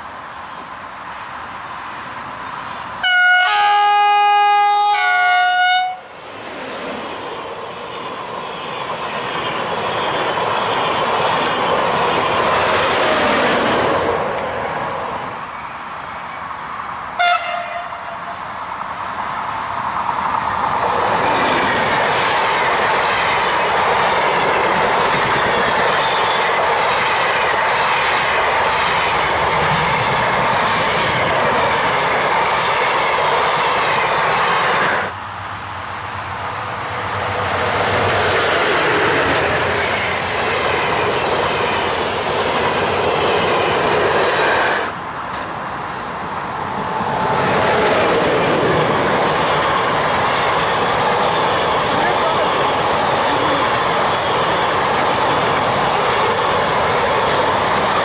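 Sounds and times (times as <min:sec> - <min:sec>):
train passing at speed: 0:00.0 - 0:58.0
short train horn toot: 0:03.0 - 0:06.1, 0:17.2 - 0:18.4.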